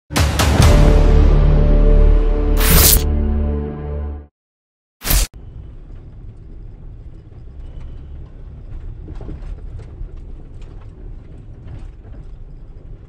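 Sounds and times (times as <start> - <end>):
vehicle engine rumbling: 5.3 - 13.0.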